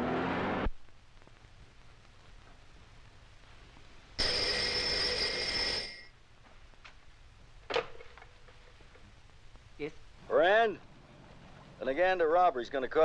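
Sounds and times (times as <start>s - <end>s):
telephone bell ringing: 4.2s - 6.1s.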